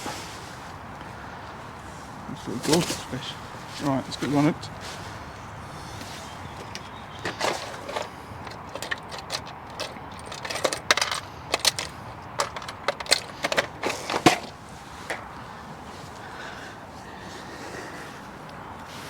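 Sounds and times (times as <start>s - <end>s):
clicks and knocks of handling: 6.0s - 15.4s.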